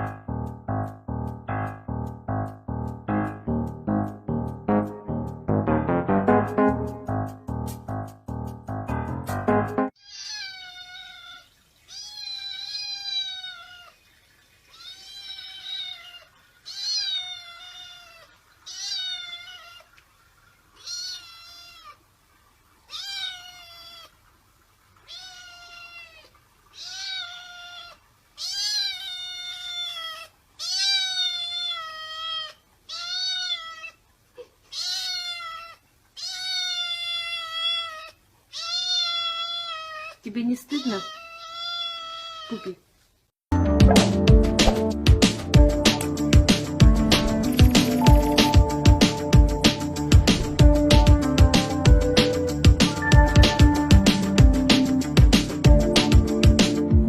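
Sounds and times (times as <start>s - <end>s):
cat meowing: 10.0s - 14.0s, 14.7s - 19.9s, 20.8s - 22.0s, 22.9s - 24.1s, 25.0s - 42.8s.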